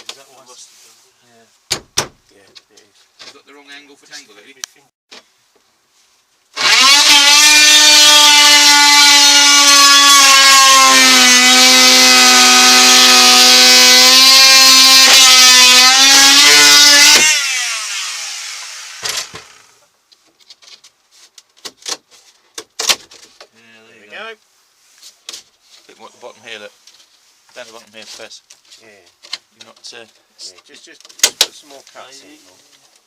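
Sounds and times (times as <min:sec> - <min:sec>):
power tool cutting wood: 0:06.6 - 0:19.8.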